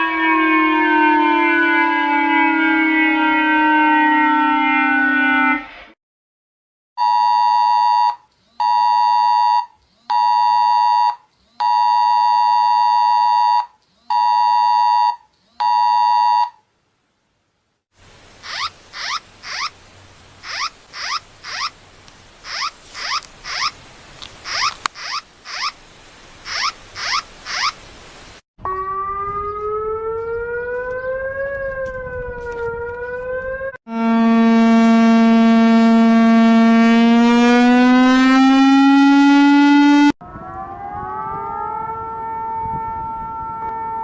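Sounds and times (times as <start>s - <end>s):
hiss with rising chirps: 18.3s - 23.8s, 24.4s - 28.4s
electronic beeps: 20.5s - 21.7s, 24.5s - 25.8s, 26.5s - 27.8s.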